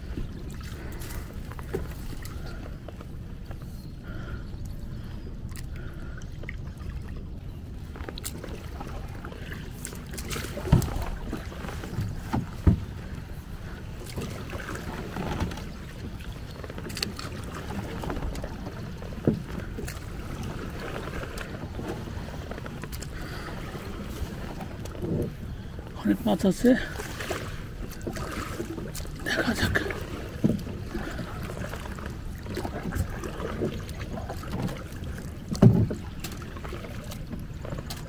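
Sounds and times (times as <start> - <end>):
paddle splashing water: 0.0 - 38.0
paddle knocking on boat: 10.1 - 25.4, 26.9 - 38.0.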